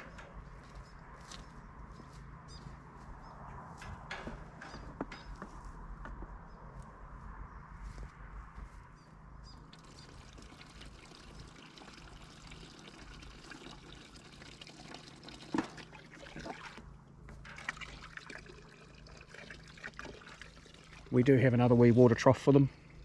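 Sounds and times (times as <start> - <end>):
water trickling and pouring: 9.7 - 21.6.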